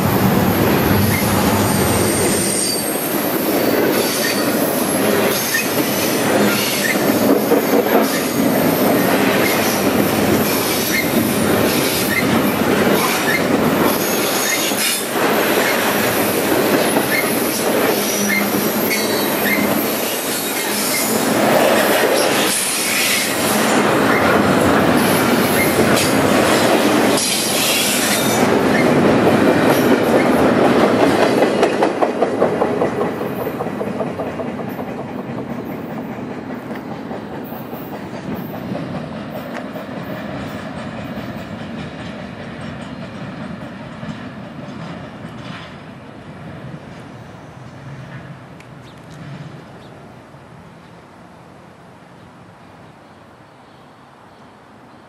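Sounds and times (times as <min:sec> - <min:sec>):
steel wheels rumbling on rails: 0:00.0 - 0:49.8
high-pitched wheel squeal: 0:01.0 - 0:03.1, 0:04.0 - 0:04.8, 0:13.0 - 0:15.0, 0:18.0 - 0:21.2.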